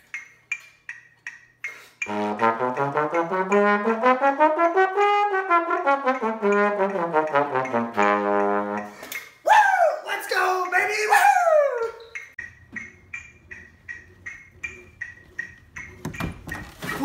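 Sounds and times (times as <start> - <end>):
low brass instrument playing scale: 2.0 - 9.0.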